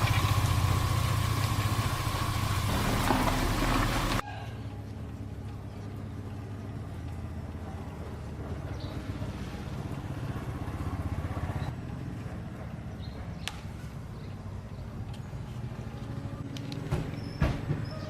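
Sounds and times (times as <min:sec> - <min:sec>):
small engine running: 0:00.0 - 0:04.2.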